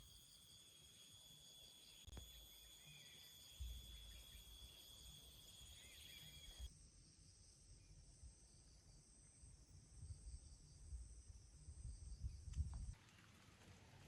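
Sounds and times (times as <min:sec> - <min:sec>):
insects trilling: 0:00.0 - 0:06.7
soft chirps: 0:00.1 - 0:06.7.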